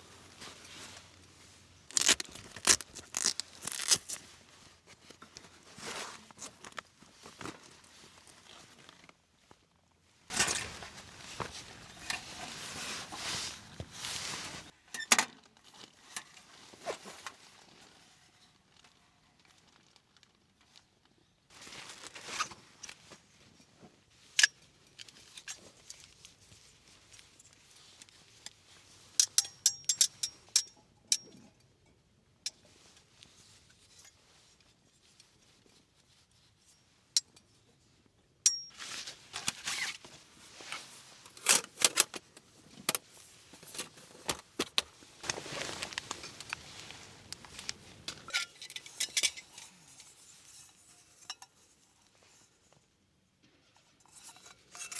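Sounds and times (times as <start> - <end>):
rustling: 0.0 - 4.7, 10.3 - 14.7, 38.7 - 48.4
metal camping gear clinking: 1.8 - 4.3, 10.3 - 14.7, 29.2 - 31.6, 38.5 - 40.0, 40.6 - 51.6, 54.1 - 54.9.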